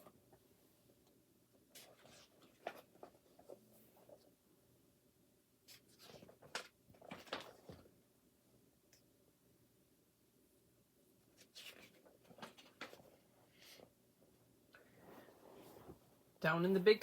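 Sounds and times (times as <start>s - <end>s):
paper rustling: 1.7s - 4.3s, 5.7s - 7.9s, 11.3s - 13.9s.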